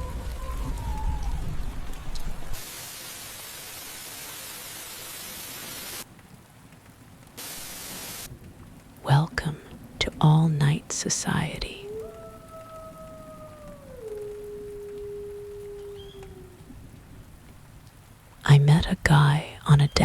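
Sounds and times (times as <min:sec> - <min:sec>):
deep low rumble: 0:00.0 - 0:02.6
rain-like hiss: 0:00.0 - 0:20.0.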